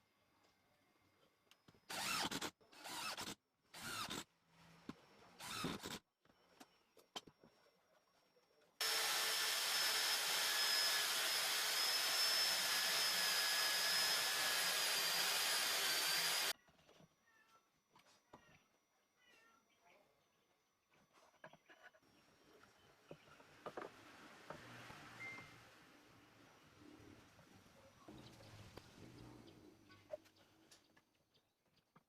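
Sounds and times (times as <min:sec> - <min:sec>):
electric drill whining: 0:01.9 - 0:03.2, 0:08.8 - 0:16.5.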